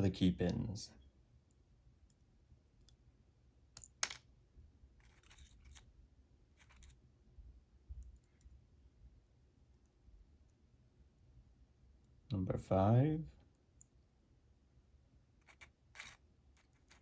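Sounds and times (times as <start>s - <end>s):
faint scraping and rustling: 5.0s - 5.9s, 6.5s - 7.0s, 15.4s - 17.0s.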